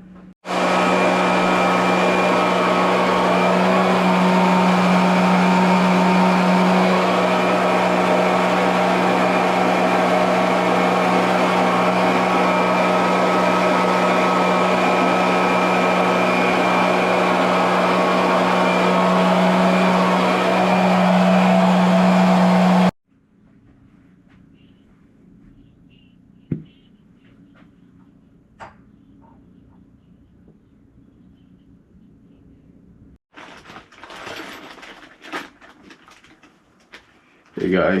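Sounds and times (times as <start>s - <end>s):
electric motor humming: 0.5s - 23.0s.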